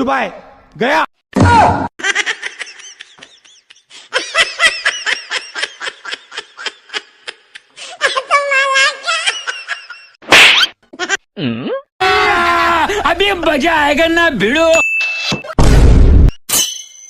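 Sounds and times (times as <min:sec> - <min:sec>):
high-pitched cackling laughter: 0:02.0 - 0:10.2.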